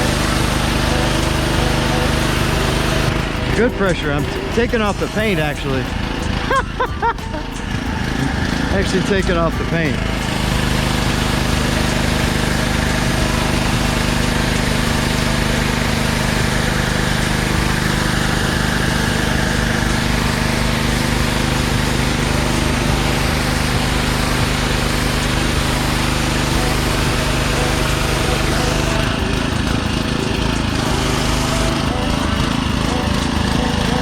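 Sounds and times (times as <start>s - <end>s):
high-pressure water spray hiss: 0.0s - 9.5s, 10.1s - 34.0s
engine running under load: 0.0s - 34.0s.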